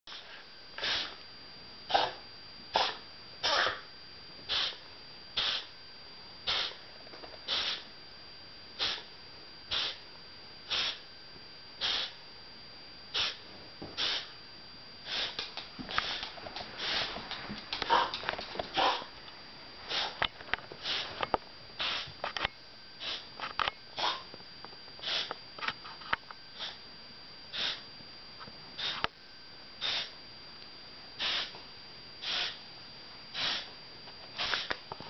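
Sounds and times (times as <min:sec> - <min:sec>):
person coughing: 0:01.9 - 0:03.9, 0:17.9 - 0:19.1, 0:24.0 - 0:24.2.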